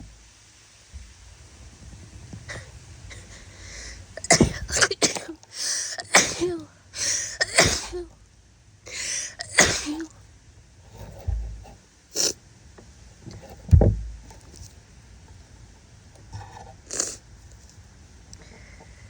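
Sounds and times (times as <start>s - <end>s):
gasping in-breath: 3.1s - 4.1s, 5.5s - 6.0s, 8.9s - 9.4s
woman sneezing: 4.2s - 8.1s, 9.0s - 10.1s.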